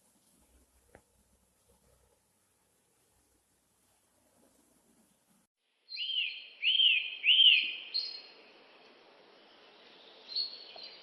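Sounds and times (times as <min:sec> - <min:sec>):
bird chirping: 0:05.8 - 0:11.0.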